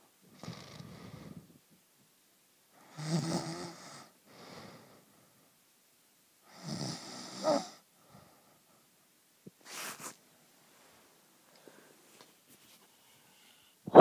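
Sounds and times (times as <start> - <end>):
soft breaths: 0.0 - 1.9, 3.6 - 5.7, 6.4 - 14.0
person snoring: 2.8 - 4.9, 6.5 - 7.8.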